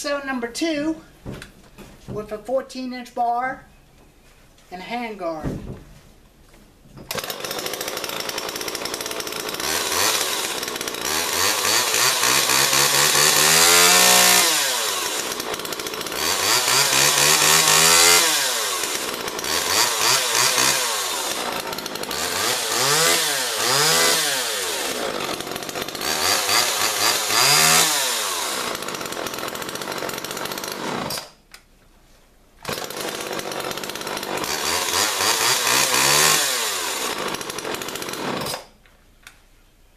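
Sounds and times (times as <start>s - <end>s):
chainsaw revving and idling: 7.1s - 31.4s, 32.6s - 38.8s.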